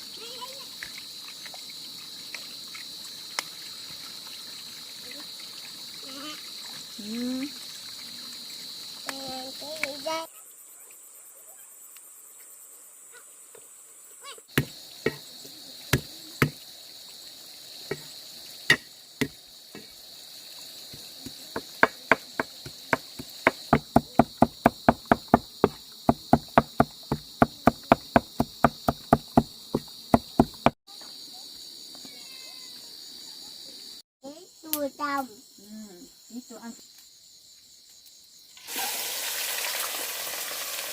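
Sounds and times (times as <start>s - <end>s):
insects chirring: 0.0s - 40.9s
sharp knocking strikes: 14.6s - 15.2s, 15.9s - 16.6s, 18.7s - 19.9s, 21.6s - 30.8s.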